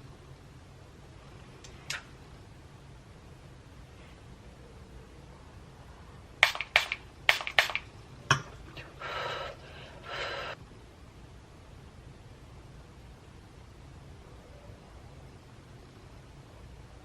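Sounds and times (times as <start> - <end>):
short hissing bursts: 6.4 - 7.9, 8.6 - 10.6
sharp plastic clicks: 6.4 - 8.5.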